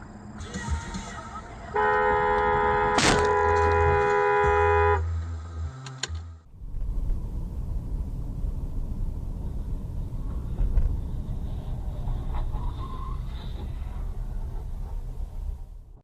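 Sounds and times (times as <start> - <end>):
car driving rumble: 0.0 - 16.0
car horn: 0.4 - 5.8.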